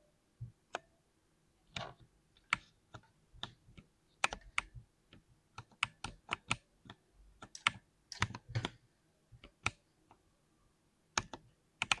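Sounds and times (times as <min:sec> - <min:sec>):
mechanical keyboard typing: 0:05.6 - 0:06.6, 0:07.4 - 0:08.8, 0:11.2 - 0:12.0.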